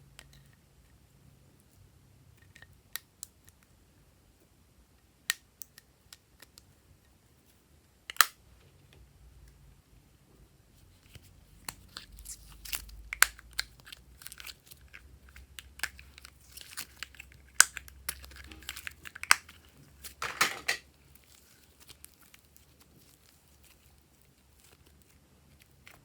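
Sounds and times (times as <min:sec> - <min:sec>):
slime crackling and popping: 0:11.6 - 0:20.2, 0:20.9 - 0:26.0.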